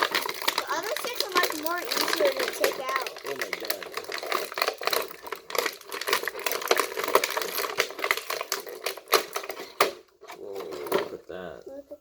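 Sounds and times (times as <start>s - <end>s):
plastic packaging crinkling: 0.0s - 11.2s.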